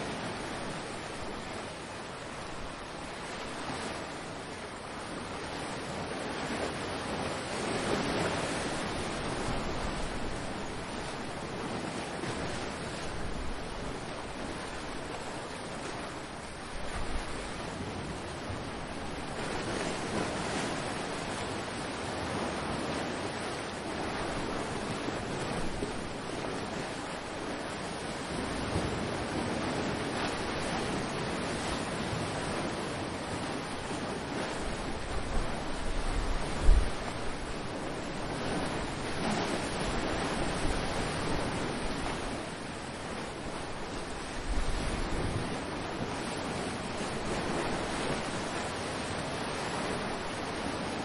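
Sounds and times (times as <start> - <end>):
ocean waves breaking: 0.0 - 51.0
wind buffeting microphone: 34.0 - 51.0.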